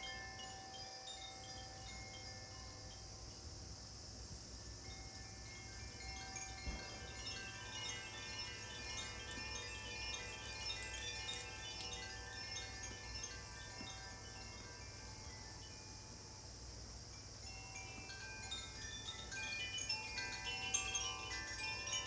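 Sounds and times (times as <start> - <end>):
healing chimes ringing: 4.9 - 16.2, 17.4 - 22.0.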